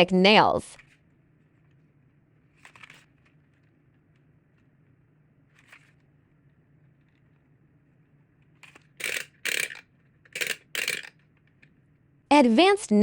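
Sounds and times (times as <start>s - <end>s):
low room hum: 0.0s - 13.0s
packaging rustling: 2.5s - 4.8s.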